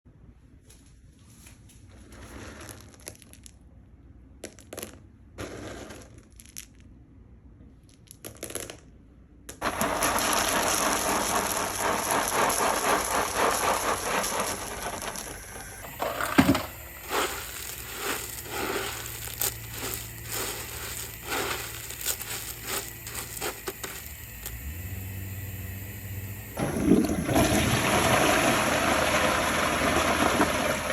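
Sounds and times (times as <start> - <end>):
toilet flushing: 9.6 - 30.9
water gurgling: 26.4 - 30.9.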